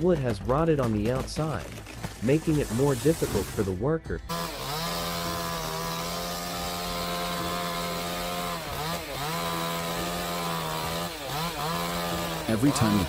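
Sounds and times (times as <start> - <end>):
chainsaw cutting tree trunk: 4.3 - 13.0.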